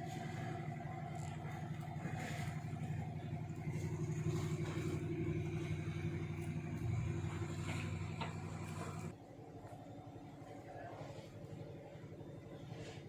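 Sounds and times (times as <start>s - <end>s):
large engine running: 0.0s - 9.2s.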